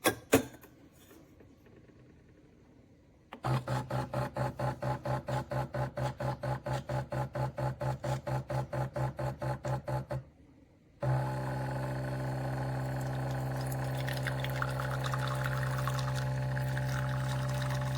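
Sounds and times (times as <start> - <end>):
espresso machine pump pulsing: 12.2 - 17.9.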